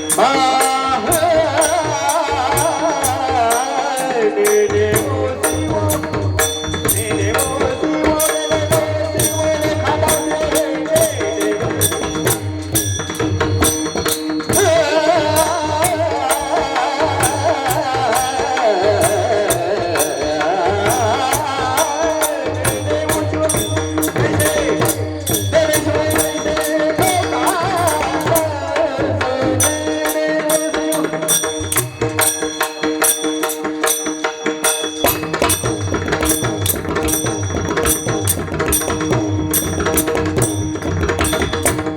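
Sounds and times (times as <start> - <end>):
person singing devotional melody: 0.0 - 41.9
hand drum: 4.5 - 41.9
hand cymbals clicking: 29.6 - 41.9.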